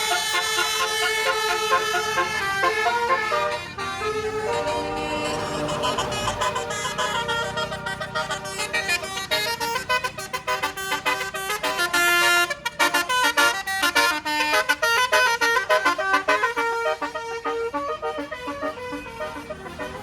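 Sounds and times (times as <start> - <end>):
bus horn playing a tune: 0.0 - 20.0.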